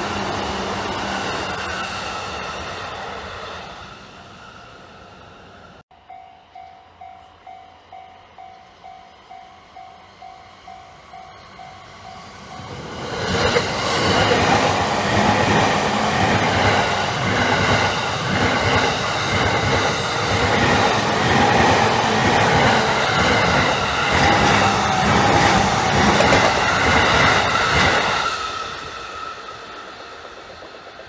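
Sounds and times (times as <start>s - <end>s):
train passing: 0.0s - 31.0s
railroad crossing bell dinging: 5.9s - 12.9s.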